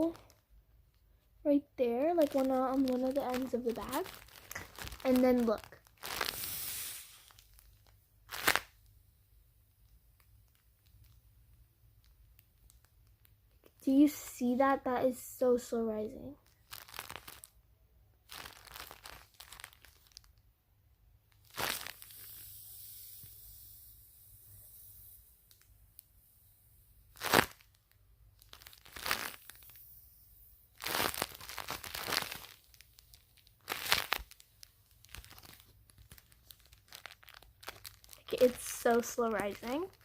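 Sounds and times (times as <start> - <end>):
plastic bag crinkling: 2.0 - 8.8, 16.4 - 17.6, 18.2 - 20.4, 21.3 - 22.6, 27.0 - 40.0.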